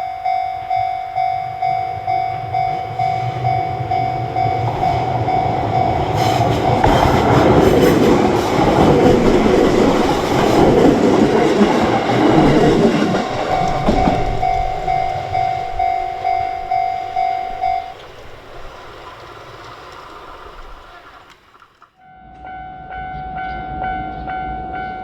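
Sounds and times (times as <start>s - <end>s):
level crossing alarm bell: 0.0s - 19.0s
train wheels on rails: 0.0s - 21.9s.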